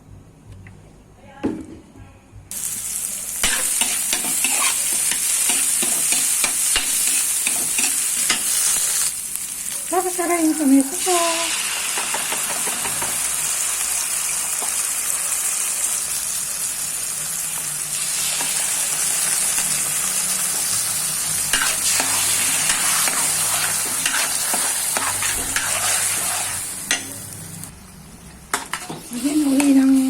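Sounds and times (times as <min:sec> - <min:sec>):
vegetables sizzling in a pan: 0:02.5 - 0:30.0
spatula scraping a pan: 0:03.4 - 0:08.8, 0:21.5 - 0:27.1.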